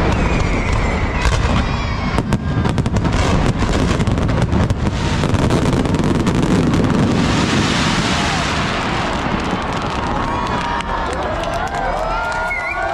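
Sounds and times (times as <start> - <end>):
sharp fireworks bangs: 0.0 - 11.0
fireworks rumble and crackle: 0.0 - 12.9.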